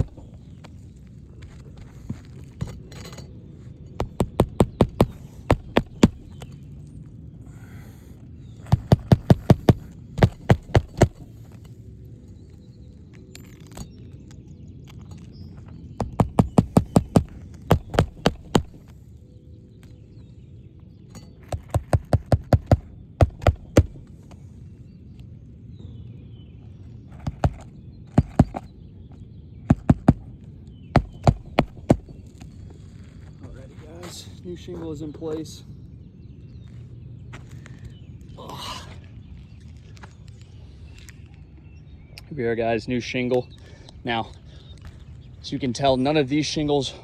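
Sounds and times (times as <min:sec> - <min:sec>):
hammer driving roofing nails: 0:00.0 - 0:00.6, 0:04.0 - 0:06.6, 0:08.6 - 0:11.8, 0:16.0 - 0:18.9, 0:21.4 - 0:24.4, 0:27.2 - 0:28.7, 0:29.7 - 0:30.3, 0:31.0 - 0:32.5.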